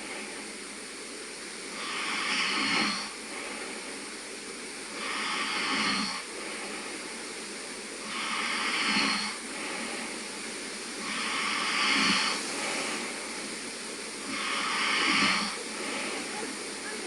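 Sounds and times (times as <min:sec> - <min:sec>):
man snoring: 0:08.0 - 0:09.4, 0:11.0 - 0:13.2, 0:14.2 - 0:16.1.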